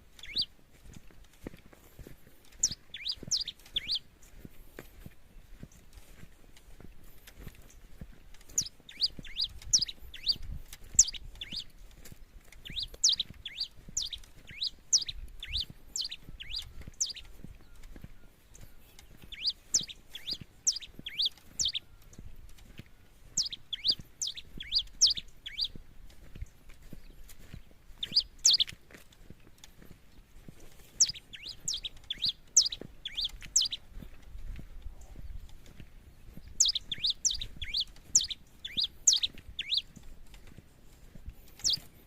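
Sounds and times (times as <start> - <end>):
finch singing: 0.0 - 0.6, 2.5 - 4.4, 7.7 - 28.8, 30.1 - 40.5, 41.4 - 42.0.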